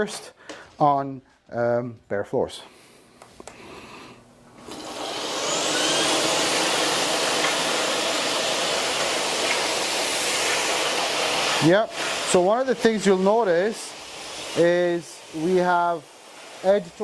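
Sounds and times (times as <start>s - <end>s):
stick vacuum motor whining: 4.5s - 12.9s.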